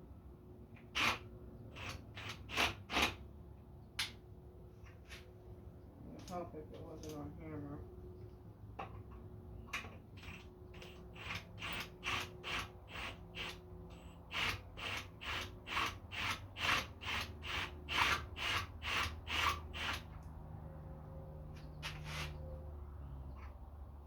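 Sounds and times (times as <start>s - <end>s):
drill ratcheting clicks: 9.8s - 20.3s.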